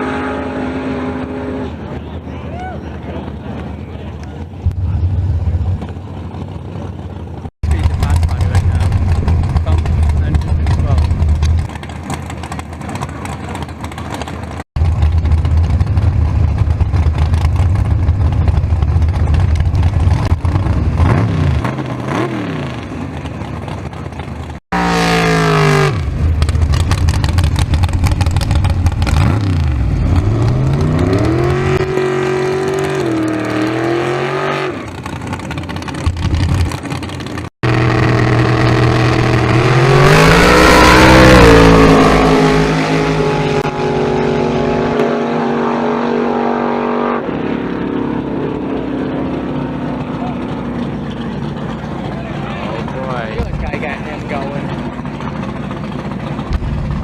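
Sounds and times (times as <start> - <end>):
low steady rumble: 0.0 - 22.0, 26.0 - 33.1, 47.2 - 57.0
race car engines revving: 0.0 - 57.0.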